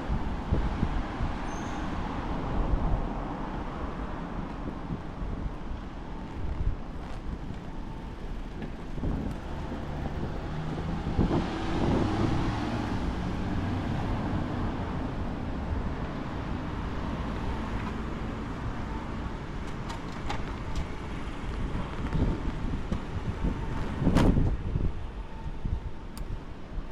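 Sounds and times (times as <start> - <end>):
wind on microphone: 0.0 - 16.5, 20.3 - 26.9
street traffic: 0.0 - 26.9
motor vehicle passing close: 8.8 - 15.0.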